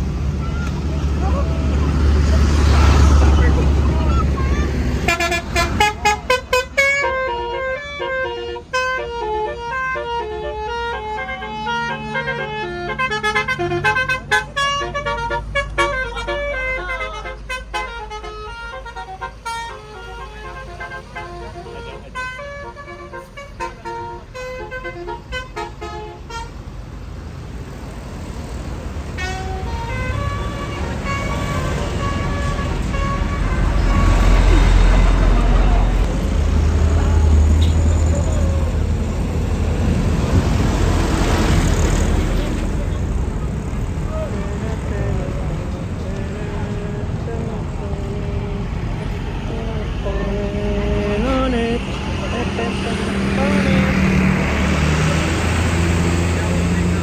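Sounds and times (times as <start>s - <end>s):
bus engine rumbling: 0.0s - 57.0s
musical air horn tune: 5.0s - 26.5s, 29.2s - 36.0s.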